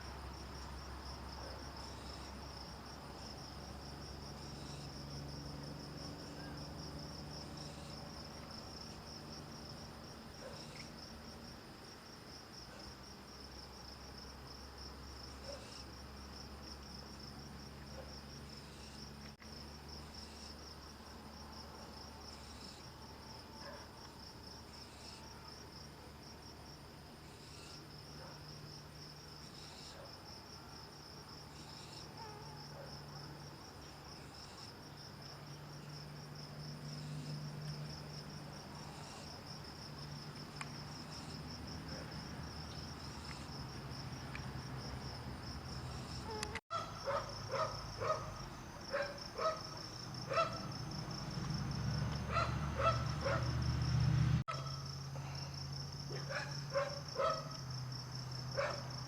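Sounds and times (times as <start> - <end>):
crickets chirring: 0.0 - 59.0.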